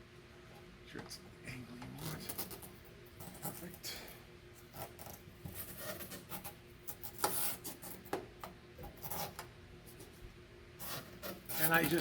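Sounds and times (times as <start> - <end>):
masking tape rustling and clicking: 10.9 - 12.0.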